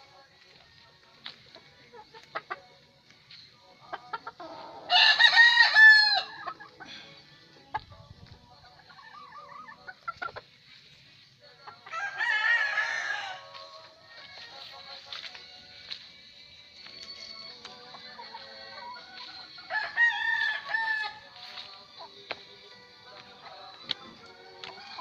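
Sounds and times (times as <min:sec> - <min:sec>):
roosters crowing: 0:04.2 - 0:07.5, 0:11.8 - 0:14.4, 0:18.0 - 0:22.0, 0:23.4 - 0:25.0.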